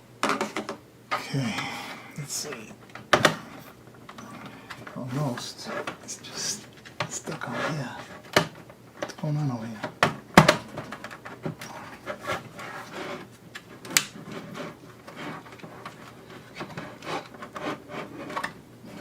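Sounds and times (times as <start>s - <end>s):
scraping and rubbing: 2.2s - 8.4s, 10.8s - 19.0s.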